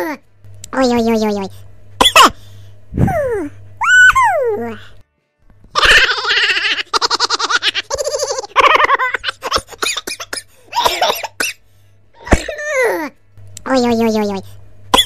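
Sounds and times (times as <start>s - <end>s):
baby giggling: 5.7s - 11.3s.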